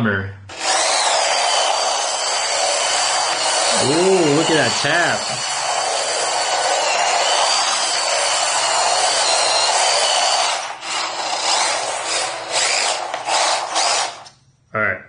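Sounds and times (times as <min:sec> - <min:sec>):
electric motor whining: 0:00.5 - 0:14.3.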